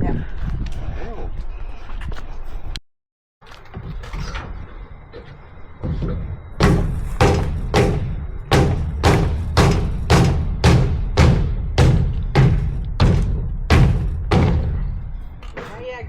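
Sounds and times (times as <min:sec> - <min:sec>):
heavy booming drum beats: 0:06.6 - 0:15.3.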